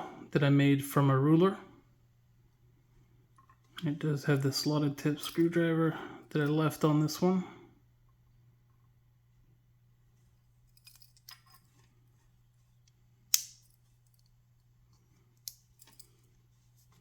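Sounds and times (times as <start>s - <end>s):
pocket knife clicks: 13.3s - 13.6s
pocket knife snapping shut: 13.3s - 13.6s.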